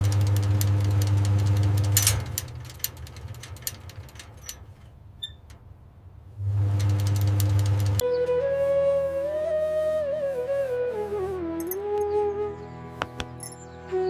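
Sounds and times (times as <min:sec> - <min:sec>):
low electrical hum: 0:00.0 - 0:08.1.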